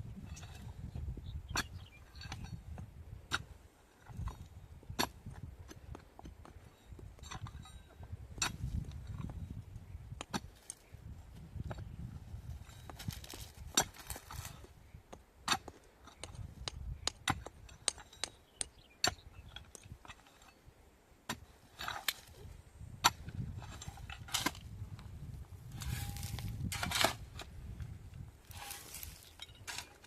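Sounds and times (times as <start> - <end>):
rough rustling: 25.6 - 27.4, 28.4 - 30.0.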